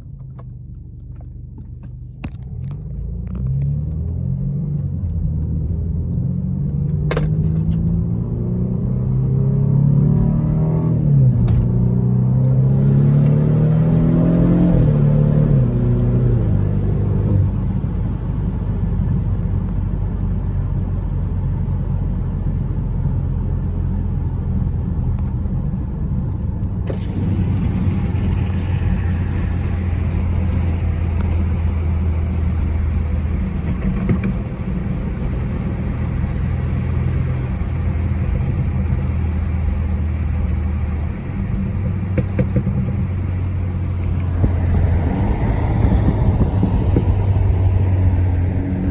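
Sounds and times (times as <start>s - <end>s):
exhaust cracks: 0.0s - 8.1s, 23.8s - 48.9s
car engine and exhaust drone: 0.0s - 48.9s.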